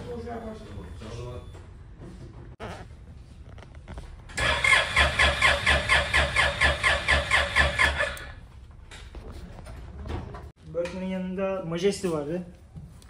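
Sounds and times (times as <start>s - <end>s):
scooter starter cranking: 4.4s - 8.4s.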